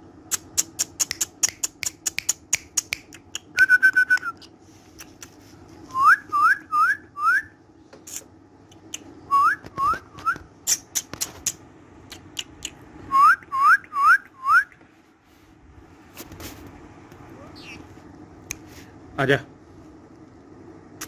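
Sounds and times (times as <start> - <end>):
sharp clicks: 0.3 - 5.4
person whistling: 5.9 - 7.5, 13.1 - 14.8.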